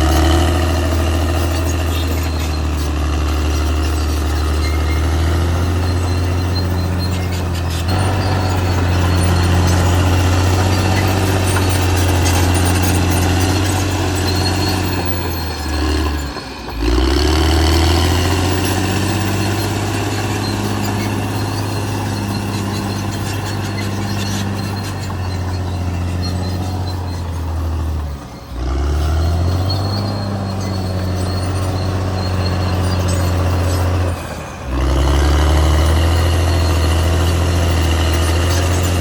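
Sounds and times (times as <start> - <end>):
bulldozer diesel engine: 0.0 - 39.0.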